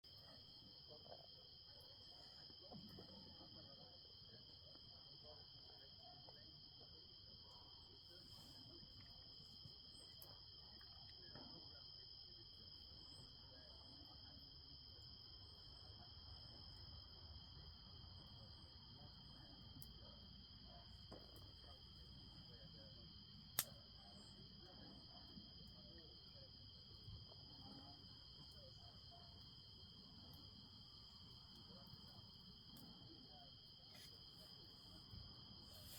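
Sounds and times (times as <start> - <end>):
night insects trilling: 0.2 - 35.9
campfire crackling and popping: 23.4 - 24.9.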